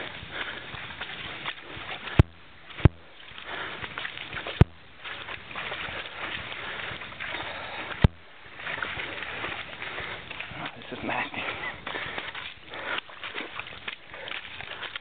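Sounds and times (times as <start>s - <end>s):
boots squelching through mud: 0.0s - 15.0s
sharp knocks: 2.2s - 3.1s, 4.6s - 4.9s.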